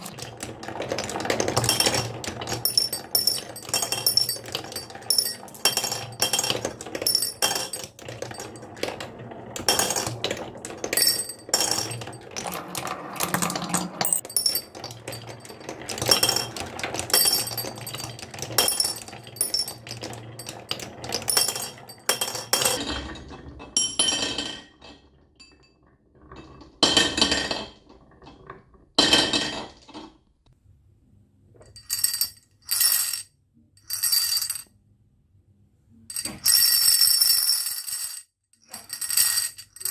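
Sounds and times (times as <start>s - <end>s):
marbles clinking on wooden track: 0.0s - 22.8s, 31.7s - 33.2s, 33.8s - 34.7s, 36.1s - 39.9s
marbles rolling rumble: 0.0s - 23.8s, 36.1s - 39.9s.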